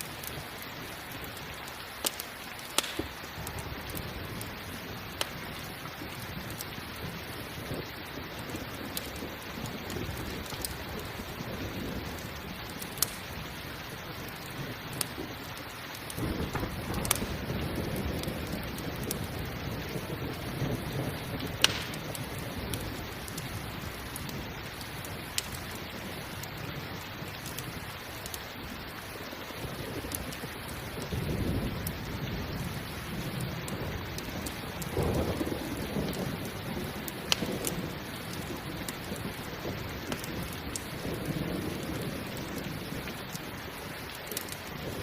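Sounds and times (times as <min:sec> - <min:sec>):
campfire crackling and popping: 0:00.0 - 0:45.0
steady rain: 0:00.0 - 0:45.0
rolling thunder: 0:16.1 - 0:27.9, 0:29.6 - 0:43.2.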